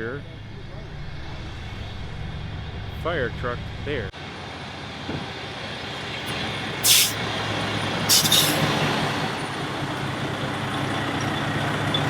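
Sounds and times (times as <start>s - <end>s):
truck diesel engine running: 0.0s - 12.0s
air brake hisses: 6.8s - 7.2s, 8.1s - 8.7s.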